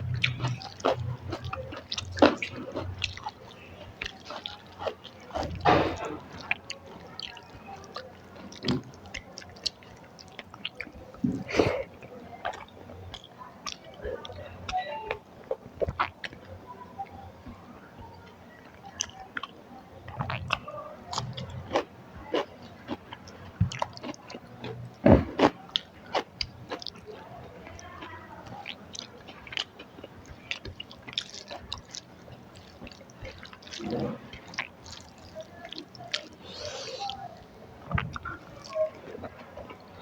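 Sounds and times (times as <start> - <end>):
person chewing: 0.0 - 11.9, 20.1 - 27.0, 27.7 - 40.0.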